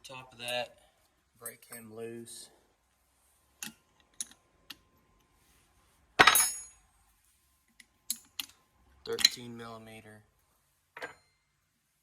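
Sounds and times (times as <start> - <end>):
metal tools clinking on metal: 6.2 - 6.8, 8.1 - 9.5.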